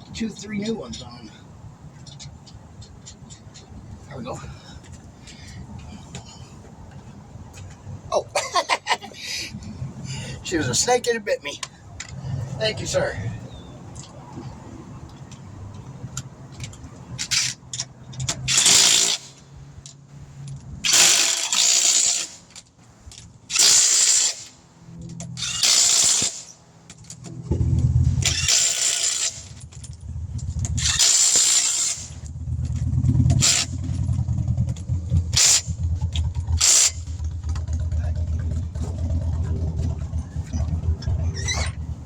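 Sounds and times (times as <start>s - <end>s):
impact wrench bursts: 18.3s - 19.4s, 20.8s - 22.6s, 23.5s - 24.6s, 25.4s - 26.6s, 27.9s - 29.8s, 30.5s - 32.3s, 33.2s - 34.0s, 35.3s - 37.3s
low engine-like hum: 26.5s - 42.0s.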